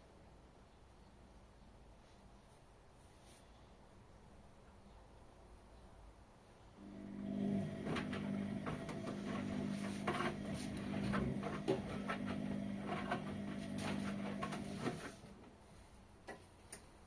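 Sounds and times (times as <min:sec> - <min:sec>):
washing machine motor hum: 0:06.8 - 0:15.5.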